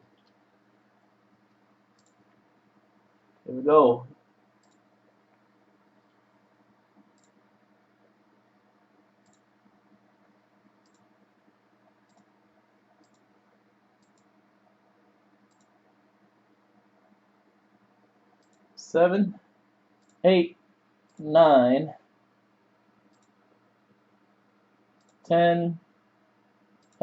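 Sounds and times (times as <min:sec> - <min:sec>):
faint computer mouse clicks: 0:01.5 - 0:02.2, 0:04.6 - 0:04.9, 0:07.1 - 0:07.4, 0:09.2 - 0:09.5, 0:10.8 - 0:11.1, 0:12.0 - 0:12.3, 0:13.0 - 0:13.3, 0:14.0 - 0:14.3, 0:15.5 - 0:15.8, 0:18.4 - 0:18.7, 0:20.0 - 0:20.2, 0:23.1 - 0:23.4, 0:25.0 - 0:25.2, 0:26.8 - 0:27.0.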